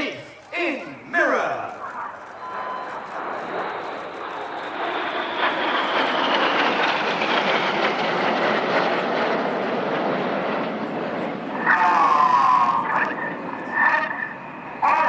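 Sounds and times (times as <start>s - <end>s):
jets roaring past: 0.0s - 15.0s
faint falling whine: 1.7s - 6.0s.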